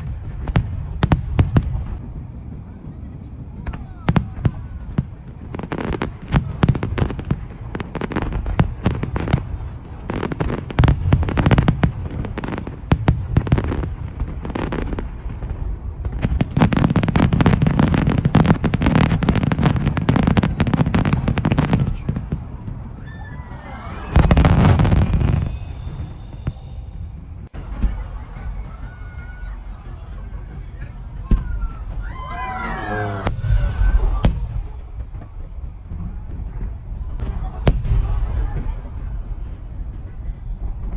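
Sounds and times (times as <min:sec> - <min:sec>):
fireworks bursting: 0:04.2 - 0:38.7
low rumbling boom: 0:22.6 - 0:39.7.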